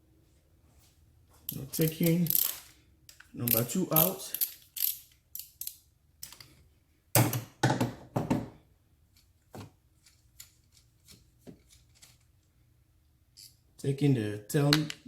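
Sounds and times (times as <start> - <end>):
hand tools clicking and knocking: 1.5 - 6.5.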